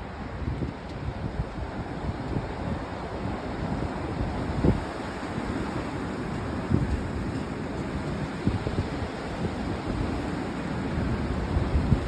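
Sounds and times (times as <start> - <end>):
strong wind blowing: 0.0 - 12.0
wind buffeting microphone: 0.0 - 12.0.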